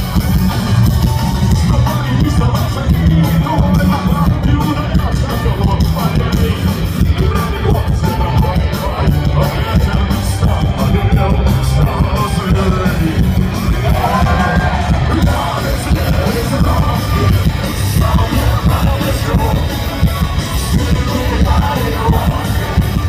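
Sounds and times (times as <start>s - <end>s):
heavy bass: 0.0s - 23.0s
punk rock band playing: 0.0s - 23.0s
shouted vocals: 13.7s - 19.6s.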